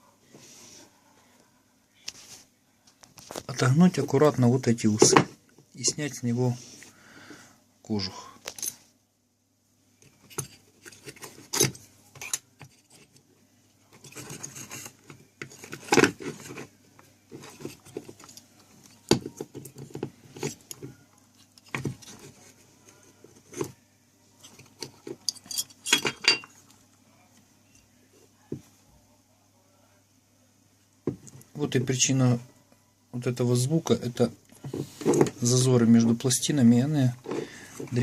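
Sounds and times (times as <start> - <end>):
faint low hum: 0.0 - 38.0
metallic clicks and scrapes: 13.9 - 16.7.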